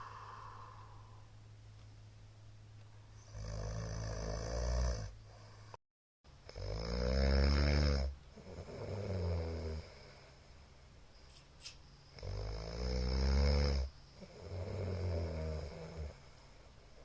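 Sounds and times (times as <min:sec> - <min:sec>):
man snoring loudly: 0:03.3 - 0:05.2, 0:06.5 - 0:10.1, 0:12.2 - 0:16.2.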